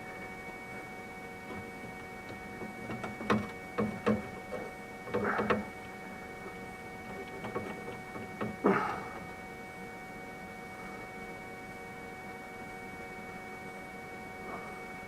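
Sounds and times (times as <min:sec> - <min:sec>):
printer humming: 0:00.0 - 0:15.0
sharp clicks and knocks: 0:01.5 - 0:05.9, 0:07.0 - 0:09.3.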